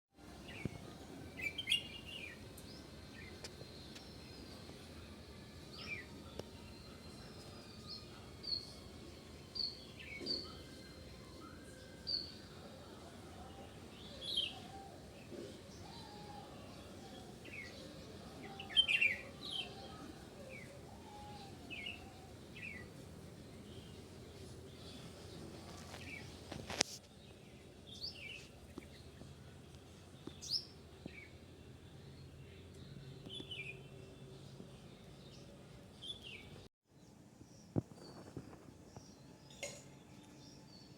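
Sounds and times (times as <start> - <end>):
faint outdoor background: 0.1 - 40.9.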